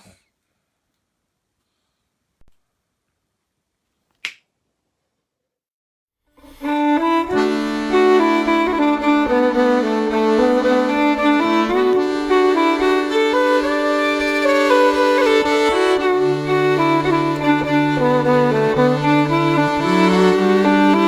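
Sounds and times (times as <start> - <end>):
accordion and fiddle tune: 6.4 - 21.0.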